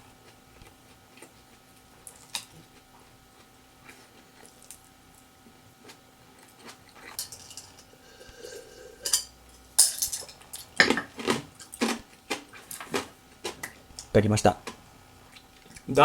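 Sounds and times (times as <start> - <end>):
utensils clinking on dishes: 7.1 - 11.8.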